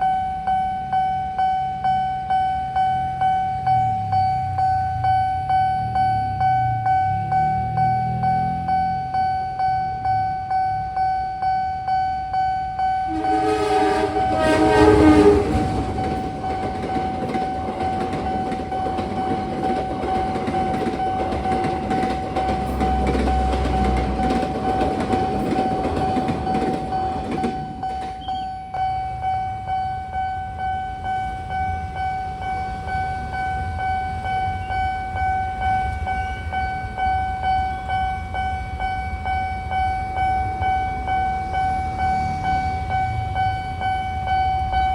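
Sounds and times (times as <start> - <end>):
train running over rails: 0.0 - 44.9
level crossing alarm ringing: 12.9 - 29.2
train horn: 13.1 - 16.5.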